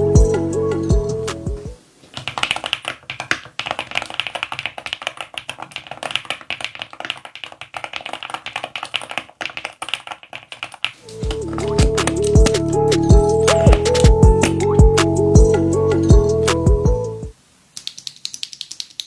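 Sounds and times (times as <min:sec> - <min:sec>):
keyboard keystroke clacks: 0:02.2 - 0:14.8.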